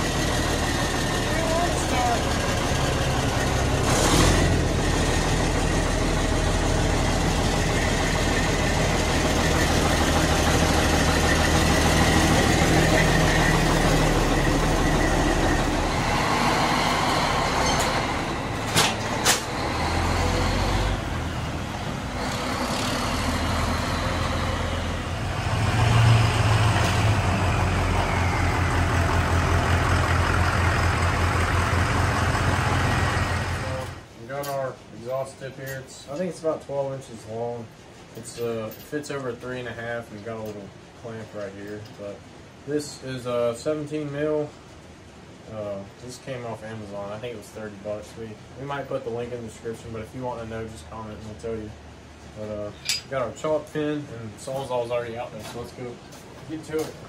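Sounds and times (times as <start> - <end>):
diesel engine idling: 0.0 - 34.2.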